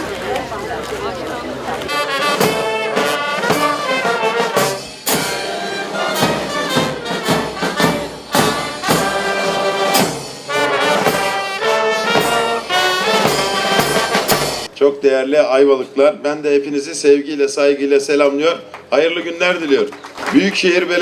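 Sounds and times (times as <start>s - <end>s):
regular drum beats: 0.0s - 14.7s
band music: 0.0s - 14.8s
loud horn melody: 0.1s - 14.7s.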